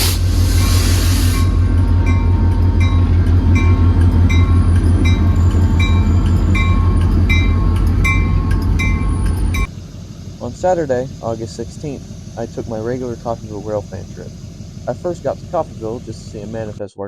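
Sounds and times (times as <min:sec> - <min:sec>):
diesel train rumbling past: 0:00.0 - 0:16.8
bell dinging: 0:01.4 - 0:09.7.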